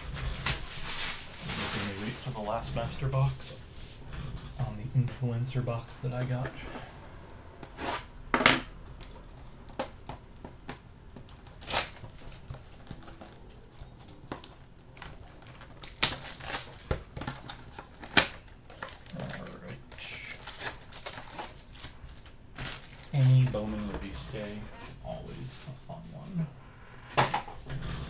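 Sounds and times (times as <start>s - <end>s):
foil wrappers crinkling and tearing: 0.0s - 3.4s, 10.7s - 24.6s.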